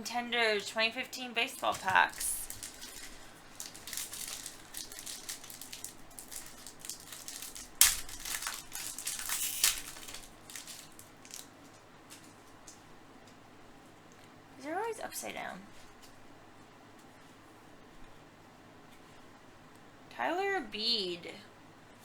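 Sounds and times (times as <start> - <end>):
wrapper crinkling and tearing: 1.7 - 12.8.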